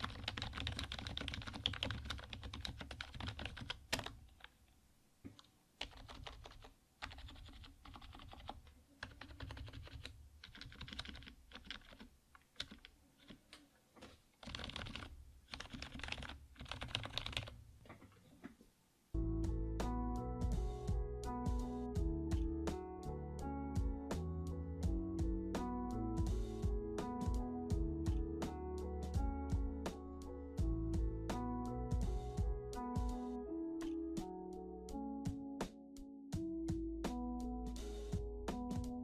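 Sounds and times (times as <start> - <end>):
typing on keyboard: 0.0 - 4.6, 5.4 - 13.5, 14.4 - 17.6.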